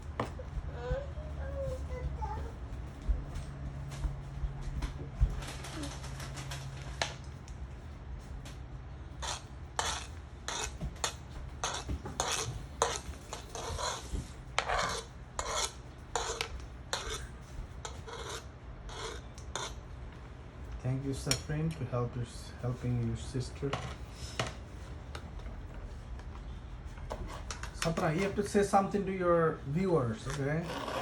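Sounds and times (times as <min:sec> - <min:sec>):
light knife scrapes: 0:09.2 - 0:19.8.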